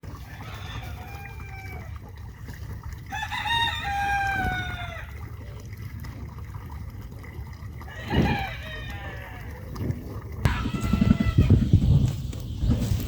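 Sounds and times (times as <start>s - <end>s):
rooster crowing: 3.1s - 5.1s, 7.9s - 9.6s, 10.5s - 11.6s.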